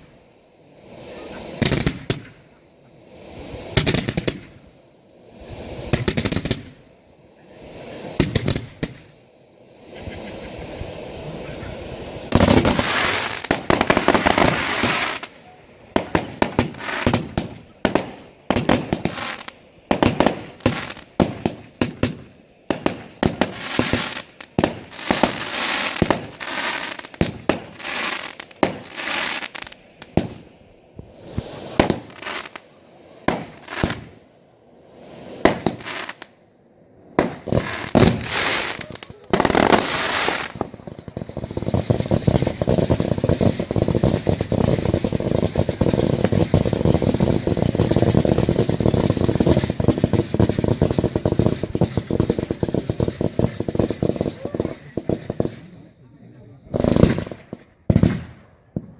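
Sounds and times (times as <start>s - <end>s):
rapid firework crackling: 0.0s - 2.6s, 3.2s - 4.6s, 5.3s - 6.8s, 7.6s - 9.2s, 9.8s - 34.2s, 35.0s - 36.4s, 37.2s - 58.9s
firework shells banging: 37.2s - 55.7s.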